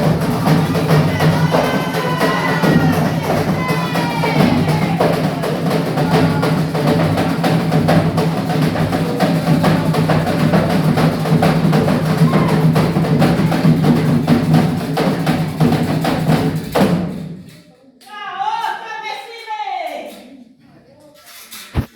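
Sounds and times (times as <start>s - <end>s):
hand drums fast rhythm: 0.0s - 17.3s.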